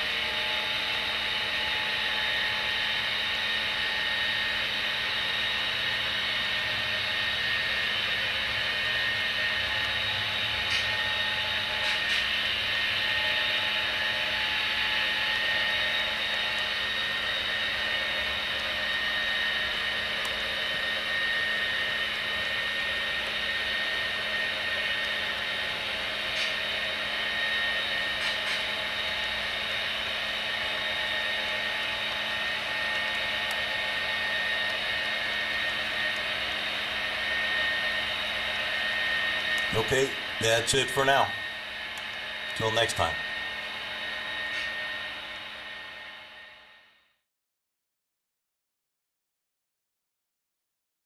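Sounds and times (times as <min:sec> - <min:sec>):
steady mechanical whir: 0:00.0 - 0:47.2.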